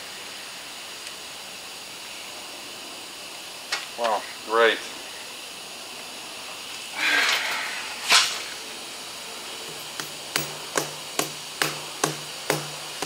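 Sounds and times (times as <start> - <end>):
hammer striking metal: 9.7 - 13.0.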